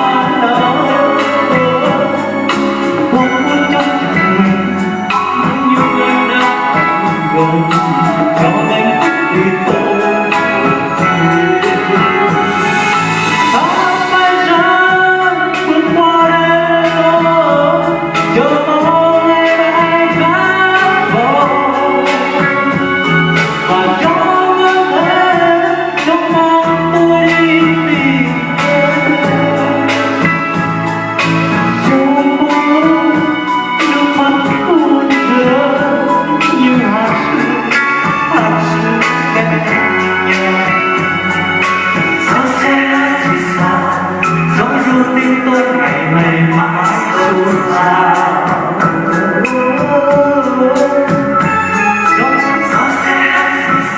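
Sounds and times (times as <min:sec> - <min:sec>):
song with band accompaniment: 0:00.0 - 0:53.9.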